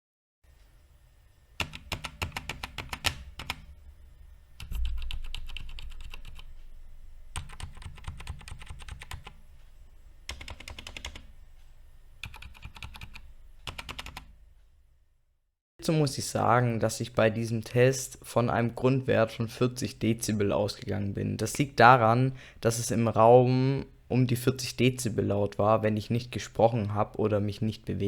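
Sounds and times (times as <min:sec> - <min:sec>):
mechanical keyboard typing: 0:01.6 - 0:03.6, 0:04.6 - 0:06.5, 0:07.4 - 0:09.4, 0:10.3 - 0:11.3, 0:12.2 - 0:14.3
dull low thump: 0:04.7 - 0:07.3.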